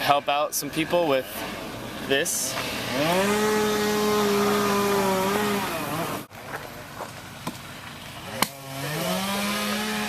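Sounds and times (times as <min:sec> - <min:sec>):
chainsaw revving: 0:01.2 - 0:06.3, 0:08.2 - 0:10.0.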